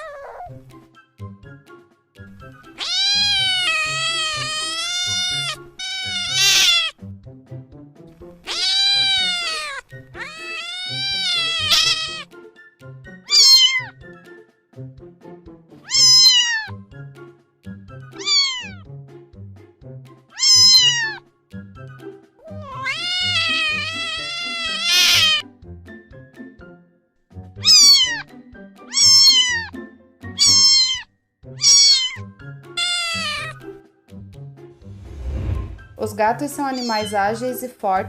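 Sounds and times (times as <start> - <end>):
cat meowing: 0.0 - 0.6, 2.6 - 7.0, 8.4 - 12.3, 13.2 - 14.0, 15.8 - 16.8, 18.2 - 18.9, 20.3 - 21.2, 22.4 - 25.4, 27.6 - 33.6, 36.7 - 37.2
soft background music: 0.0 - 38.0.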